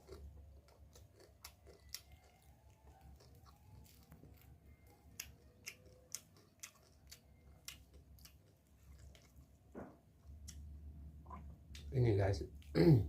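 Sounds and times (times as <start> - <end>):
crunching and chewing: 0.0 - 11.9
crab shell cracking in teeth: 0.1 - 8.5.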